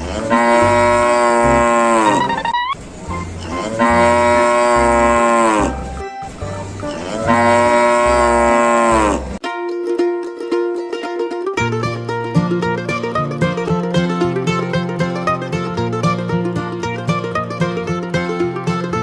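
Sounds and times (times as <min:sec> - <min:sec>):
cow mooing: 0:00.0 - 0:02.5, 0:03.5 - 0:05.9, 0:06.9 - 0:09.4.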